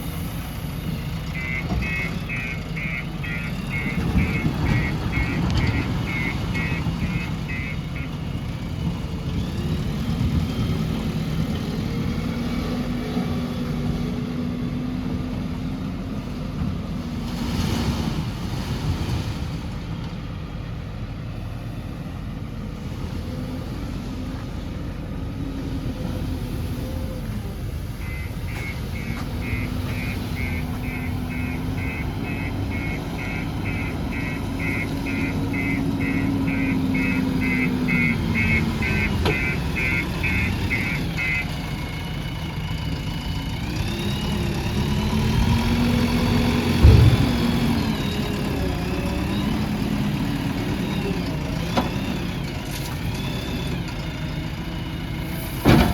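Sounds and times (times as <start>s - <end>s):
diesel engine revving: 0.0s - 55.9s
reversing alarm beeping: 1.2s - 8.3s, 27.9s - 41.8s
heavy thump: 46.8s - 47.6s.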